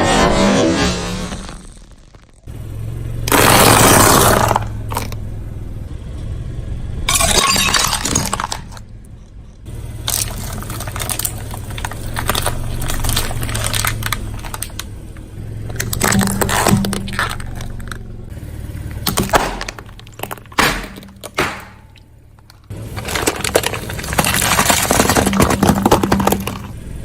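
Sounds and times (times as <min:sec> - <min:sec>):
car engine running low: 0:00.0 - 0:27.0
tyre crushing crunchy objects: 0:03.3 - 0:05.2, 0:10.0 - 0:18.0, 0:18.6 - 0:27.0.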